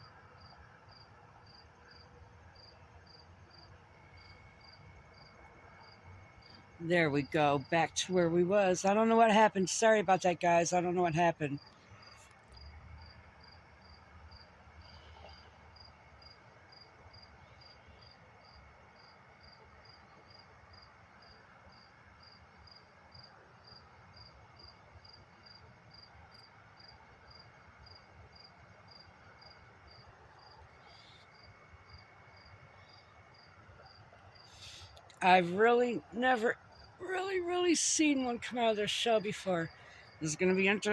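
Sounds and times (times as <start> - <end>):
cricket chirping: 0.0 - 40.9
insect trill: 0.0 - 40.9.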